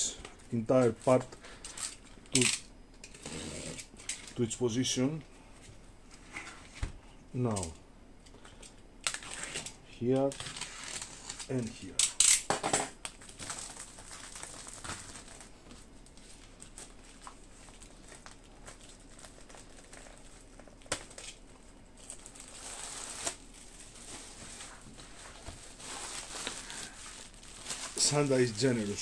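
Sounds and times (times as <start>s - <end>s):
packaging rustling and crinkling: 8.4s - 29.0s.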